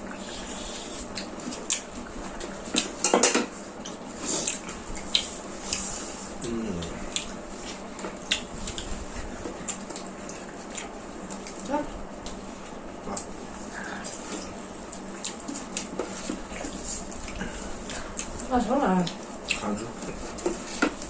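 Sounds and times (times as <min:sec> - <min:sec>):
plates and cutlery clinking: 0:02.8 - 0:03.6.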